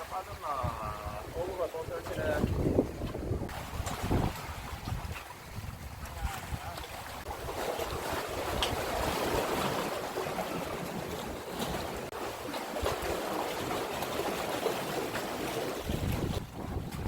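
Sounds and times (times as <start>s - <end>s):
wind rumbling on microphone: 0.0s - 12.2s, 15.6s - 17.0s
sea water washing at shore: 0.0s - 17.0s.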